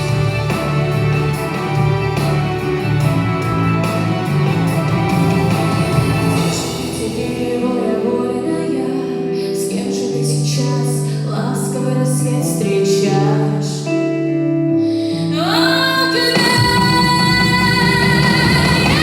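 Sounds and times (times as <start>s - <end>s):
instrumental accompaniment: 0.0s - 10.2s
woman singing: 6.4s - 19.0s.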